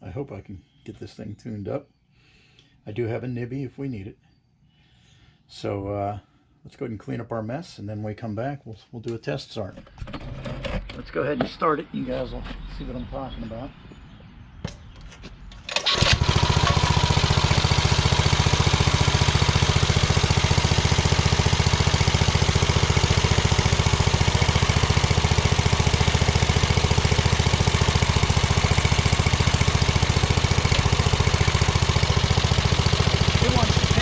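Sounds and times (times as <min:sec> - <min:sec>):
small engine starting and running: 0:15.6 - 0:34.0.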